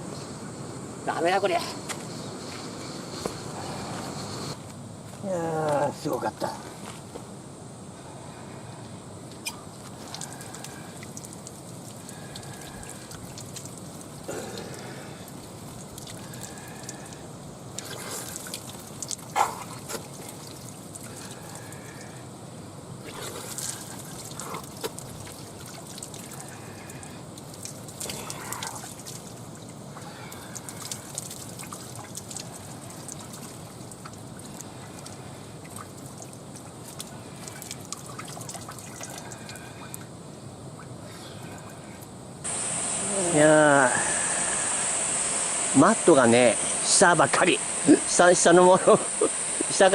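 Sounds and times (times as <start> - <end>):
water trickling: 9.4 - 22.2, 23.0 - 43.9.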